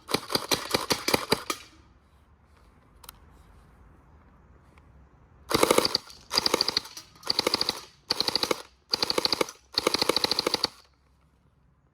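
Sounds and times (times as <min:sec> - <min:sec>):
gel blaster full-auto bursts: 0:05.5 - 0:10.9.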